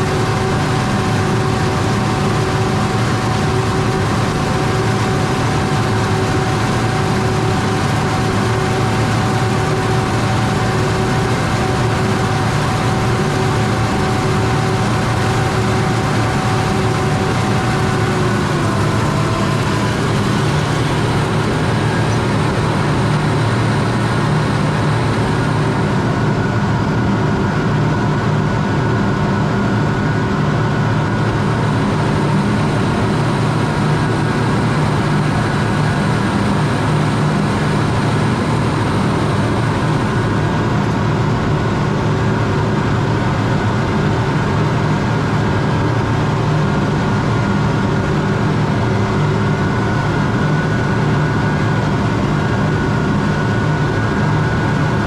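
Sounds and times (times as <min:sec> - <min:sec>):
faint high whine: 0:00.0 - 0:26.7, 0:31.1 - 0:41.0
farm machine engine droning: 0:00.0 - 0:55.0.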